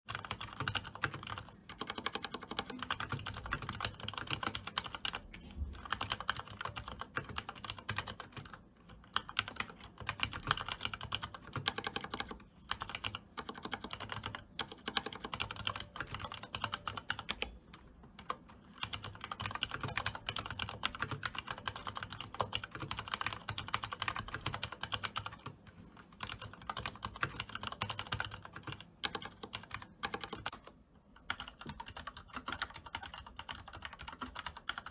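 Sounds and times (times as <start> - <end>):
mechanical keyboard typing: 0.1 - 34.9.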